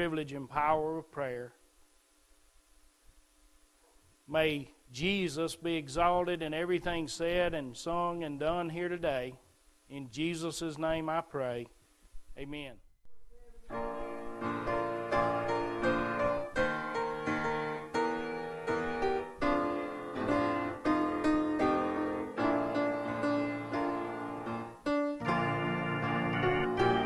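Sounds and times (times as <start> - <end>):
piano music: 13.7 - 27.0.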